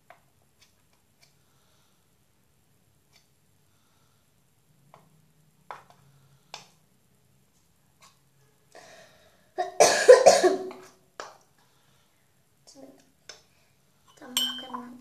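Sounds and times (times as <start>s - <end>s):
faint clicks and taps: 4.8s - 6.8s
person coughing: 9.6s - 10.8s.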